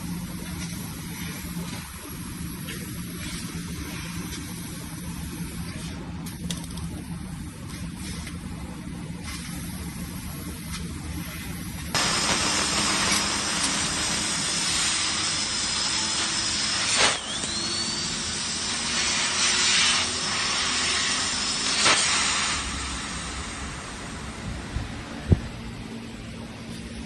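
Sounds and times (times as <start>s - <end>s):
cutting gas jet hiss: 12.0s - 25.0s.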